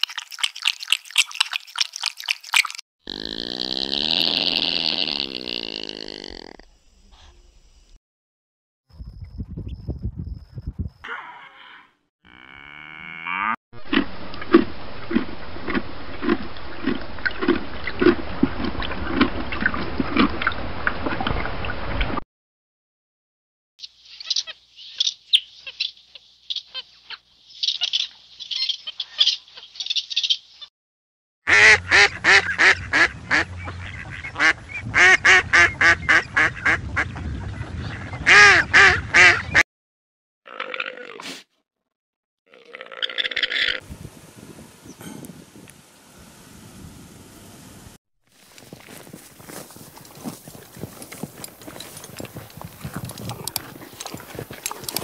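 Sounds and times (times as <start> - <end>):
regular low thuds: 9.0 - 11.0
duck quacking: 31.5 - 37.2, 38.2 - 39.6
rustling noise: 48.3 - 55.0
scattered clicks: 51.1 - 55.0.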